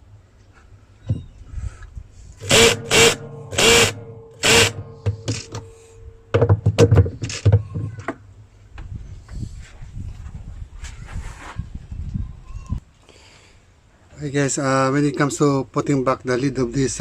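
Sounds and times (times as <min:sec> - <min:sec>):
loud scraping strokes: 0:02.4 - 0:06.0.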